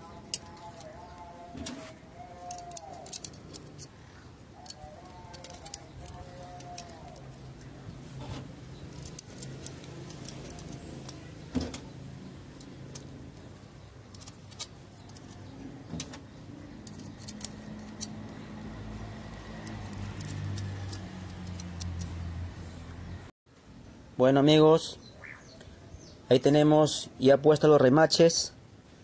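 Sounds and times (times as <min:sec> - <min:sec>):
small metal clicks and clinks: 0:02.4 - 0:03.9, 0:04.6 - 0:07.6, 0:16.8 - 0:18.7.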